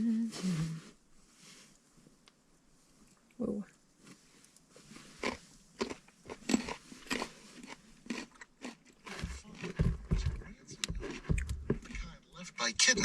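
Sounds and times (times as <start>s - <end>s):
person chewing crunchy food: 5.2s - 12.2s.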